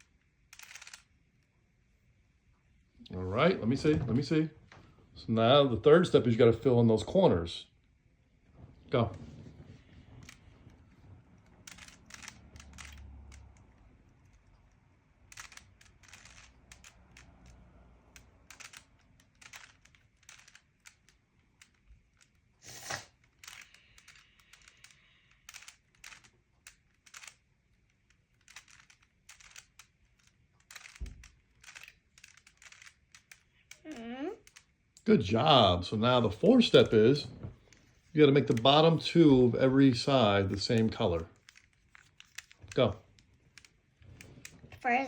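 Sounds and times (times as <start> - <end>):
puzzle cube plastic clicks: 0.0 - 1.5, 10.2 - 35.0, 37.6 - 44.9.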